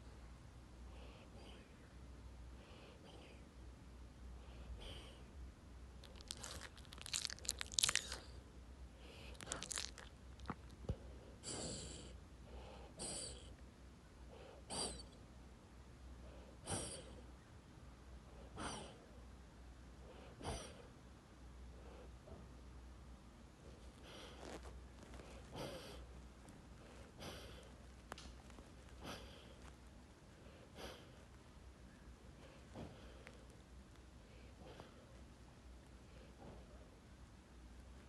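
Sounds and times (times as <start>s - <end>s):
dog snoring: 11.4s - 13.5s, 16.6s - 17.2s, 18.6s - 19.0s.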